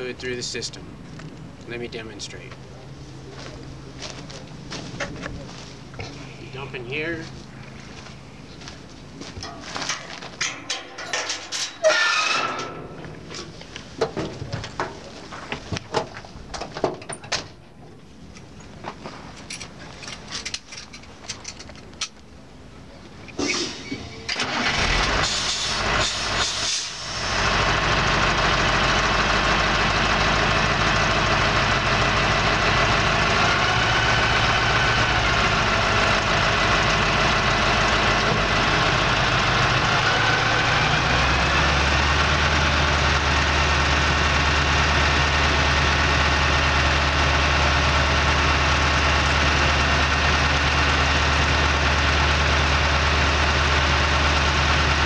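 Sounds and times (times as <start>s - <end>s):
truck engine running: 0.0s - 17.0s, 17.8s - 55.0s
truck engine starter cranking: 9.4s - 13.6s, 23.4s - 41.1s.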